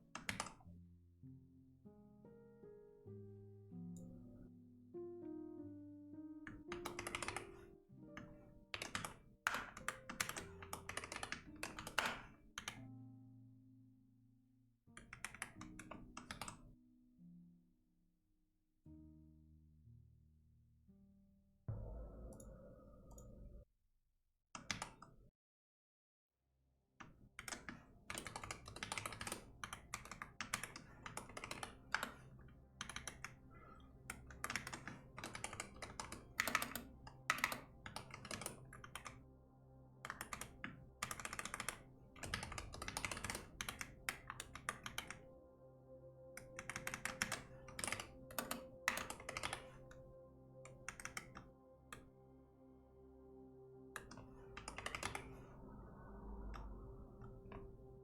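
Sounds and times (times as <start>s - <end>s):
soft background music: 0.0s - 17.8s, 27.4s - 58.0s
computer keyboard typing: 0.1s - 0.6s, 6.5s - 12.8s, 15.0s - 16.7s, 24.6s - 25.1s, 27.4s - 39.2s, 40.0s - 45.3s, 46.4s - 50.1s, 50.7s - 52.1s, 54.0s - 55.6s.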